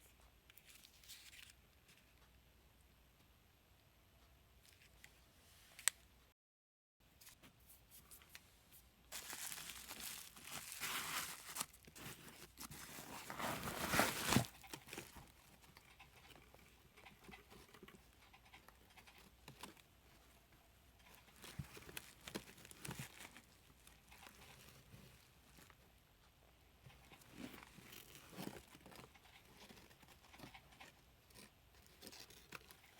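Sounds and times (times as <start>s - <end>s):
quiet rustling: 7.1s - 32.9s
packaging crinkling and tearing: 9.1s - 15.2s, 21.3s - 24.4s.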